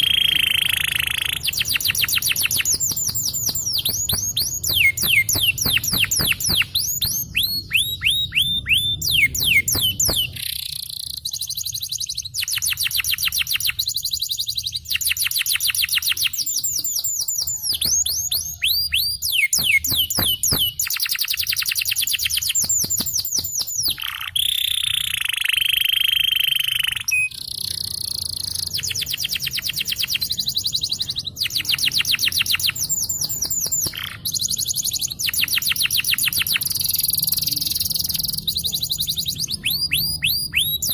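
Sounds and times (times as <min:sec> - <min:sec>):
canary singing trills: 0:00.0 - 0:40.9.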